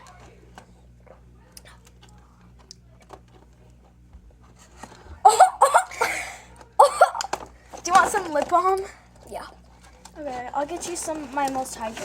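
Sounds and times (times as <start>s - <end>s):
girl yelping: 5.3s - 6.2s, 6.8s - 7.3s
breathy gasp: 5.9s - 6.5s.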